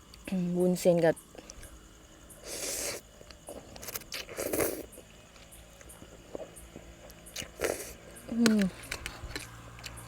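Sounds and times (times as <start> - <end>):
wet slurping and chewing: 2.4 - 5.1, 6.2 - 8.0.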